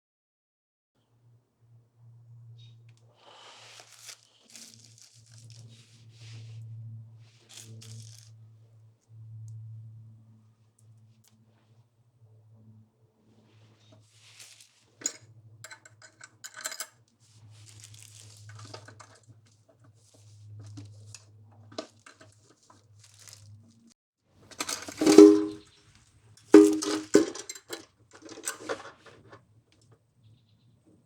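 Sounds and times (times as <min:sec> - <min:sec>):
small metal parts clinking: 0:15.0 - 0:17.0, 0:24.5 - 0:25.6, 0:26.5 - 0:29.0
ringing metal clanks: 0:24.6 - 0:25.6.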